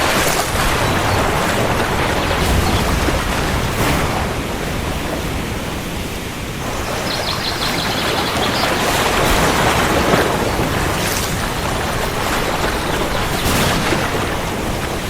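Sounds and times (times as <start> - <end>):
heavy rain: 0.0 - 15.0
faint high chirping: 6.7 - 9.3.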